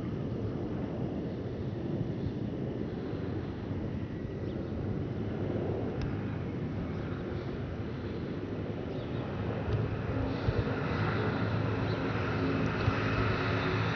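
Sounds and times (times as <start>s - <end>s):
jet engines rumbling: 0.0s - 13.9s
wind buffeting microphone: 0.0s - 13.9s.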